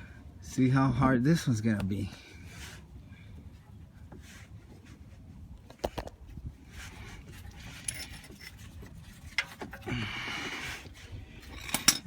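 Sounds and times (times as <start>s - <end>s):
hand tools jingling clatter: 7.7s - 8.7s.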